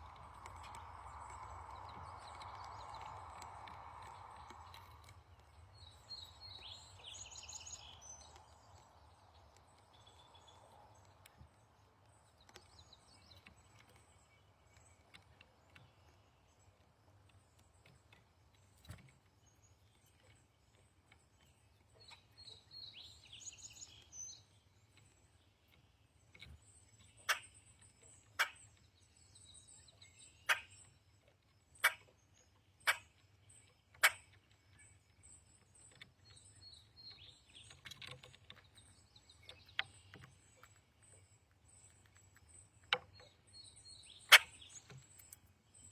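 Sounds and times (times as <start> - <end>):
songbird warbling: 0.0 - 9.0, 27.0 - 31.0, 31.8 - 41.2, 42.9 - 45.9
faint bird chirps: 0.0 - 45.9.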